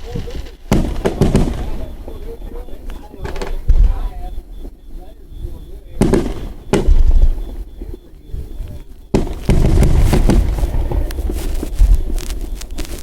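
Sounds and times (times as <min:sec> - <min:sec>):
fireworks bangs and crackles: 0:00.0 - 0:13.0
low rumble: 0:03.6 - 0:12.9.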